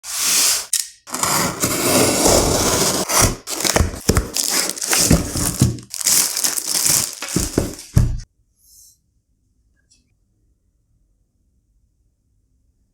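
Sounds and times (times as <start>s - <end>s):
plastic and card crinkling: 2.6s - 8.2s.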